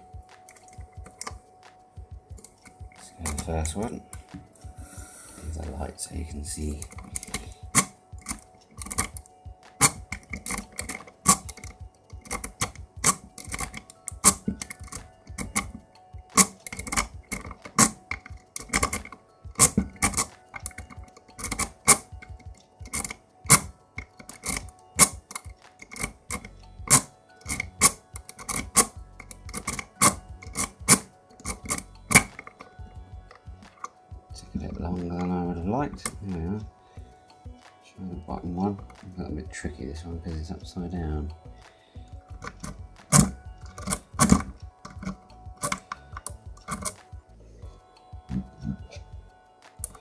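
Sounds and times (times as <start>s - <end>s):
lock pick clicking in lock: 0.5s - 1.4s, 6.8s - 15.8s, 16.4s - 32.7s, 42.4s - 47.0s.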